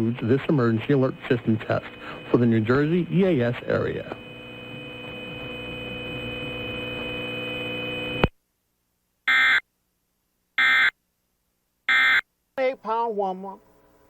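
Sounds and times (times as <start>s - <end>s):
steady hum: 0.0s - 8.4s.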